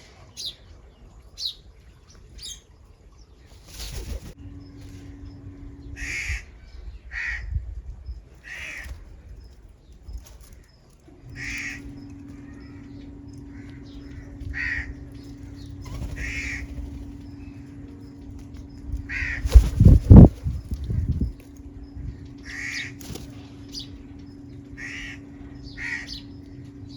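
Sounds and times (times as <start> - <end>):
steady low hum: 0.0 - 26.9
crow cawing: 6.0 - 6.4, 7.1 - 7.5, 8.4 - 8.9, 11.4 - 11.9, 13.5 - 15.0, 16.1 - 16.8, 19.1 - 19.5, 22.4 - 22.9, 24.8 - 25.2, 25.8 - 26.2.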